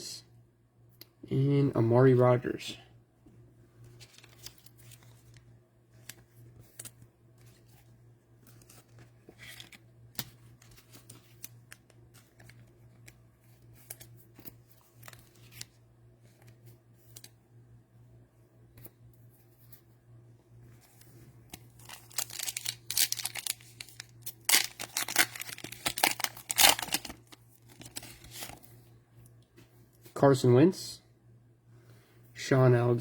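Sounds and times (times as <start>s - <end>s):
cards and wrappers handled: 3.8s - 17.4s, 20.8s - 28.8s.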